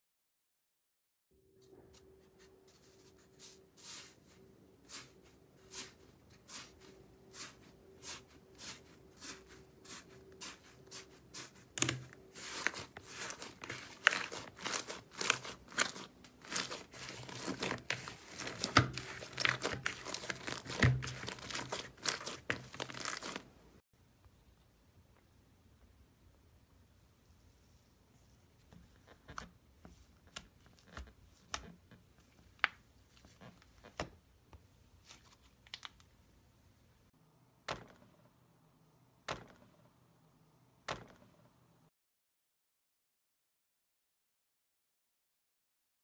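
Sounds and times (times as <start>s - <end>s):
crunchy slime being squeezed: 10.6s - 23.5s.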